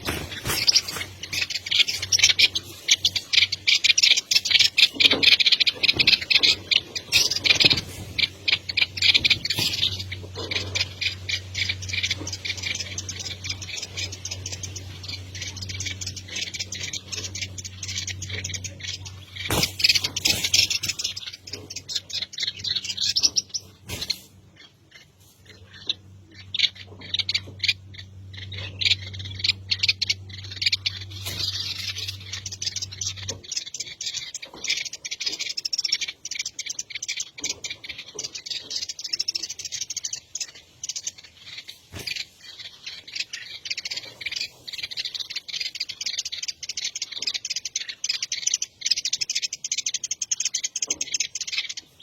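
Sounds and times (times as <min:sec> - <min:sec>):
birds chirping: 0:00.0 - 0:52.0
low steady hum: 0:00.0 - 0:52.0.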